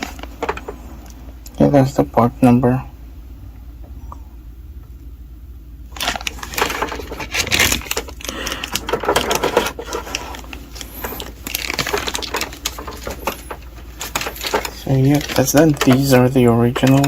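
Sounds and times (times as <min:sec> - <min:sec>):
plastic crinkling and clicking: 0:00.0 - 0:01.6, 0:06.0 - 0:17.0.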